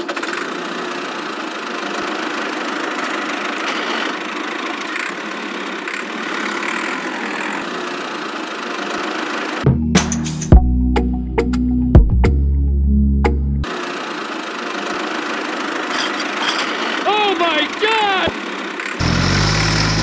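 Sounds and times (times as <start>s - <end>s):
small motor running: 0.0s - 9.6s, 13.6s - 20.0s.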